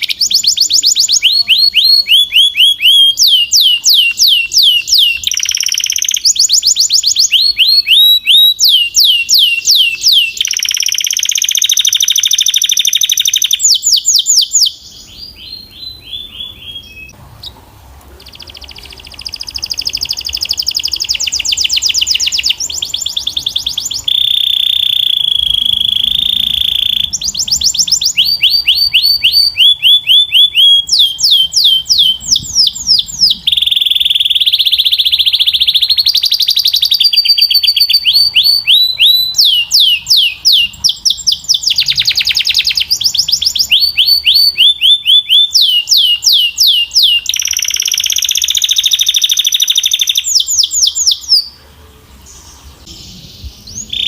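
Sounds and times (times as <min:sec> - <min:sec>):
canary singing trills: 0:00.0 - 0:54.0.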